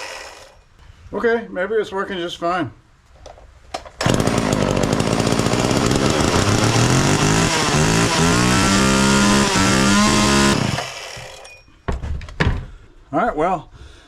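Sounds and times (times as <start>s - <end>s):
chainsaw engine running: 0.0s - 0.5s, 4.0s - 11.5s.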